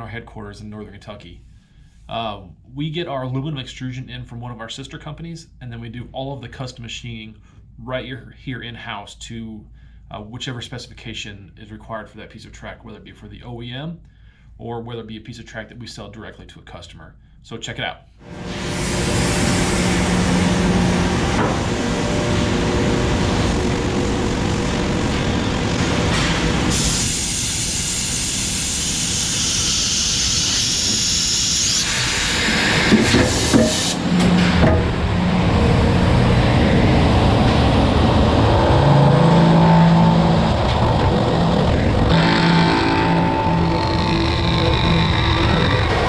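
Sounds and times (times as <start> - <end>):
loud hiss: 18.3 - 46.0
machinery cutting aluminum: 18.3 - 46.0.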